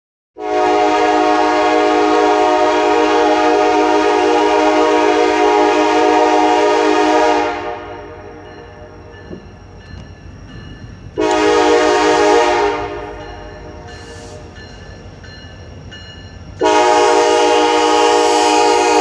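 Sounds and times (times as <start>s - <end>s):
locomotive air horn blast: 0.4s - 9.0s, 11.2s - 14.6s, 16.6s - 19.0s.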